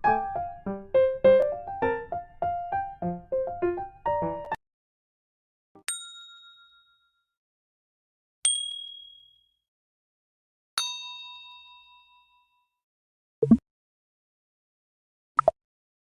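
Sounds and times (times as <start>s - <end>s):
chime dings: 5.9s - 7.3s, 8.5s - 9.6s, 10.8s - 12.6s.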